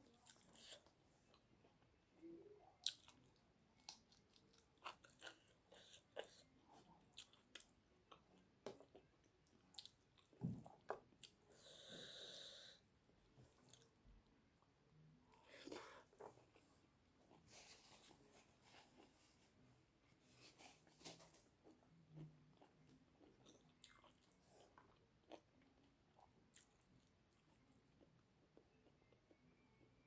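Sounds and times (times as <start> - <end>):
chewing with wet mouth clicks: 2.8 - 11.4, 21.7 - 29.6.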